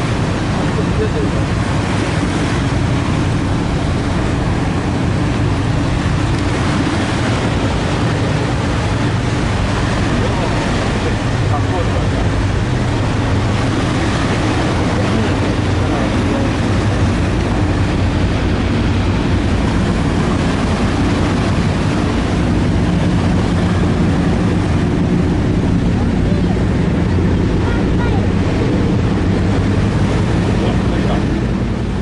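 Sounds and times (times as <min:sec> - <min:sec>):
constant rushing noise: 0:00.0 - 0:32.0
engine drone: 0:00.0 - 0:32.0.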